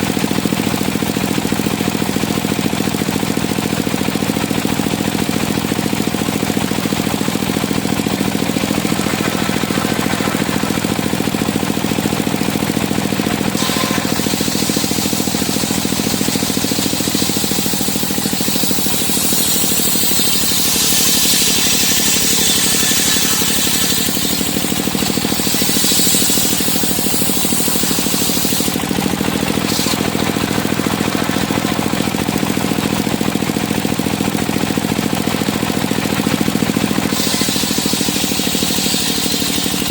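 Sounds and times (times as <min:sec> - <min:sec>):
sawmill engine running: 0:00.0 - 0:39.9
saw blade cutting wood: 0:05.4 - 0:34.2, 0:36.1 - 0:39.9.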